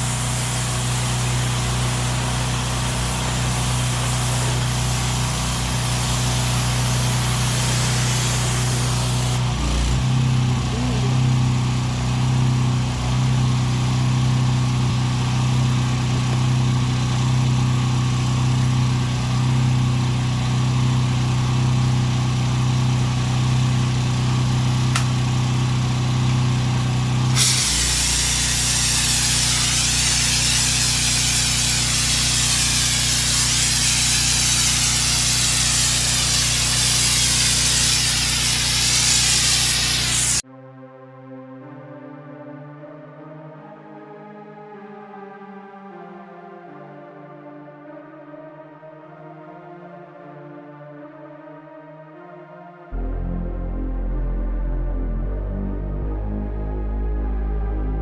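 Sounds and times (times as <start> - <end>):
high-pressure water spraying: 0.0 - 40.4
pressure washer engine running: 0.0 - 40.4.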